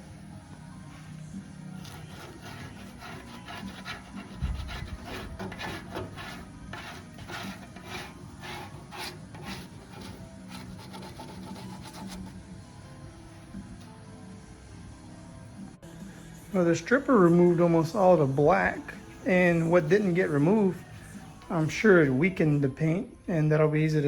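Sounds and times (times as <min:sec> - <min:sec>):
hand scraping on sheet metal: 0:01.8 - 0:12.4.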